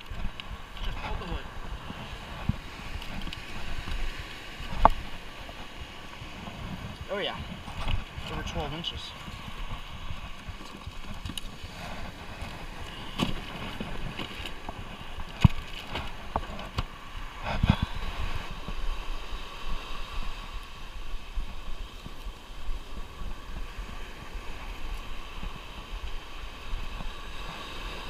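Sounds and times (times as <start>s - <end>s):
surf rushing: 0.0s - 28.0s
wind buffeting microphone: 0.0s - 28.0s.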